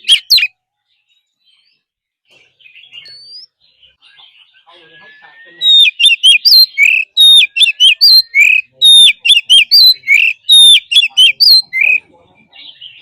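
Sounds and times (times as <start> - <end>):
bird singing whistled phrase: 2.9 - 12.0.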